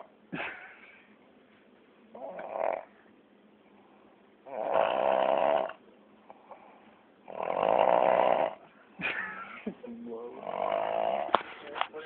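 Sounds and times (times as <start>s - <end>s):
pet snoring: 2.1s - 2.9s, 4.4s - 5.8s, 6.4s - 8.7s, 10.4s - 11.5s.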